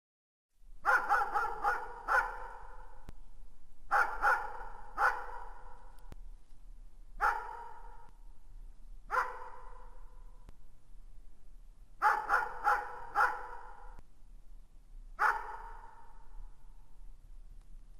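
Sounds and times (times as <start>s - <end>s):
dog barking in the distance: 0.8s - 2.9s, 3.9s - 5.7s, 7.2s - 8.1s, 9.1s - 10.0s, 12.0s - 13.9s, 15.2s - 16.3s.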